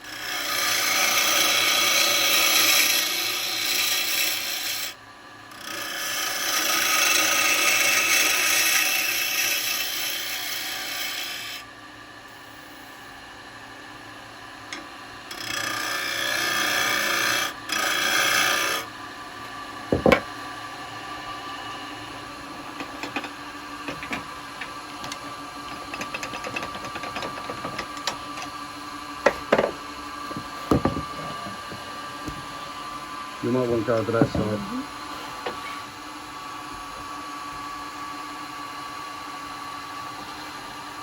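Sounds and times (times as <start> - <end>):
wood lathe cutting with hiss: 0.0 - 11.7, 14.7 - 18.9, 21.6 - 35.9
turning tool scraping wood: 0.1 - 4.9, 5.6 - 11.6, 15.3 - 18.8, 22.4 - 28.6
sharp knocks: 19.9 - 20.3, 29.2 - 31.2.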